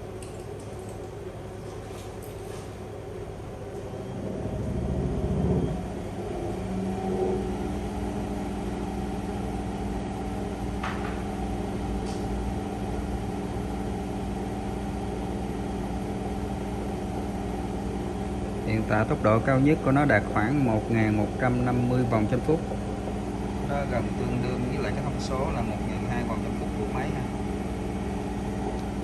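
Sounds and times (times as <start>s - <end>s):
washing machine spinning at high speed: 0.0s - 29.0s.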